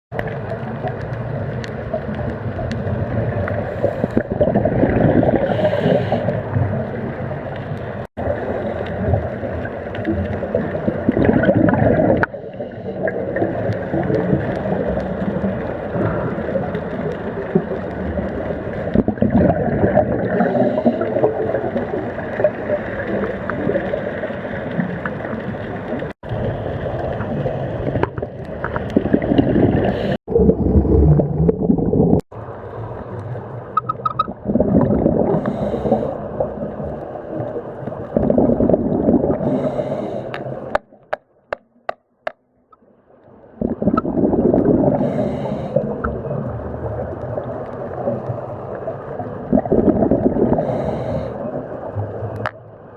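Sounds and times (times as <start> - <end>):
exhaled bubbles gurgling underwater: 0.1 - 41.2, 42.8 - 52.9
regulator inhale hiss: 3.7 - 4.2, 5.5 - 6.4, 20.4 - 21.1, 35.4 - 36.2, 39.4 - 40.7, 45.0 - 45.8, 50.6 - 51.5
clicks: 33.8 - 34.3.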